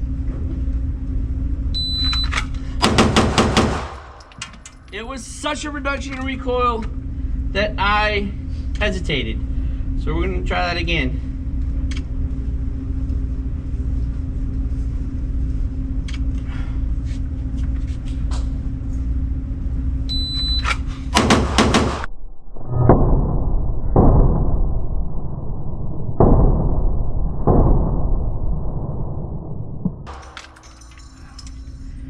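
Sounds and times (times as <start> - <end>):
shot timer beep: 1.8 - 2.3
rapid pistol shots: 2.8 - 4.6, 21.2 - 22.1
slowed deep muffled booms: 21.2 - 30.1.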